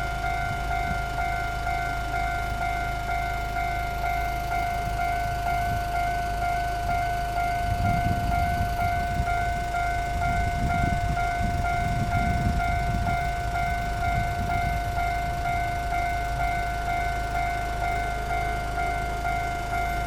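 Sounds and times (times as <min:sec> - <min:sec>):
level crossing warning bell: 0:00.0 - 0:20.0
train rumbling past: 0:00.0 - 0:20.0.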